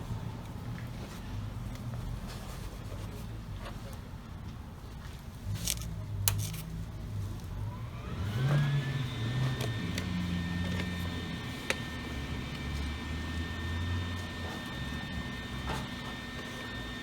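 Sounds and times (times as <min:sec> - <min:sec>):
angle grinder whining: 0:07.7 - 0:17.0.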